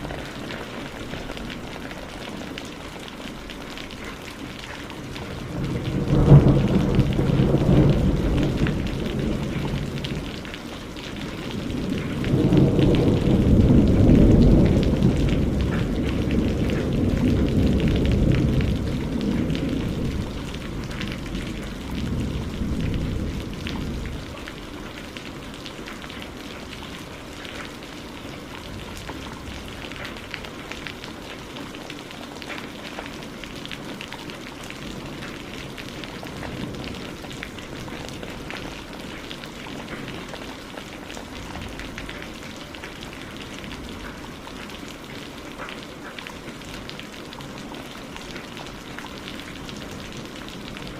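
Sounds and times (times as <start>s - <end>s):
rain falling: 0.0s - 50.9s
thunder rumbling: 5.0s - 27.7s.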